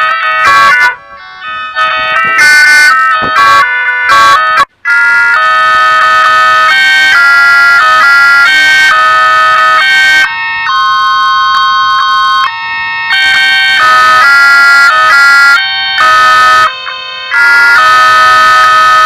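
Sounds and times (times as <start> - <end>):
distorted phone ringtone melodies: 0.0 - 5.1.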